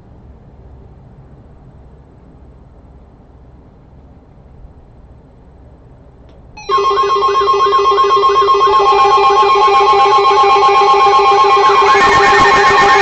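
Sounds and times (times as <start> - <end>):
fast-pulsing lower tone: 6.6 - 13.0
second steady tone: 6.6 - 13.0
steady high alert tone: 6.6 - 13.0
warbling siren-like tone: 6.6 - 13.0.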